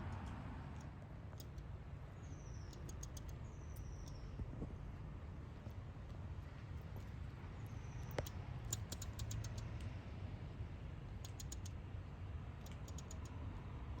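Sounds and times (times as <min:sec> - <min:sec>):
squirrel clicking: 0:00.0 - 0:04.4, 0:07.7 - 0:10.0, 0:11.0 - 0:13.5
low background rumble: 0:00.0 - 0:14.0.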